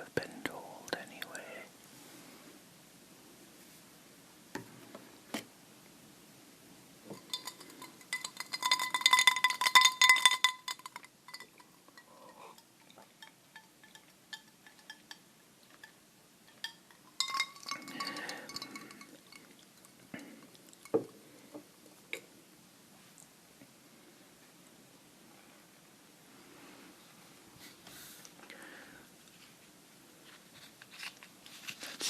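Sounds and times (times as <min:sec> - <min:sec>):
rapid tapping on ringing object: 0:07.2 - 0:12.1, 0:16.5 - 0:19.0.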